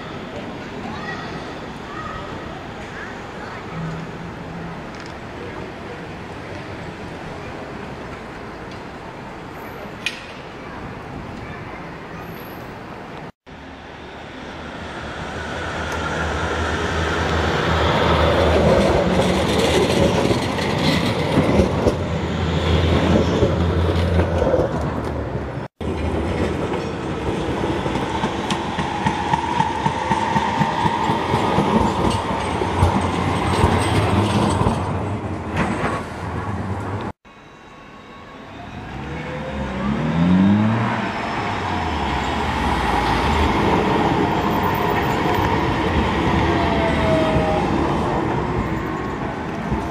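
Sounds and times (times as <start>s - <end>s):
tram wheels rumbling over rails: 14.6s - 37.2s, 38.7s - 49.9s
tram wheel squeal: 25.8s - 36.5s, 37.3s - 49.9s
tram motors rising in pitch: 37.3s - 49.9s.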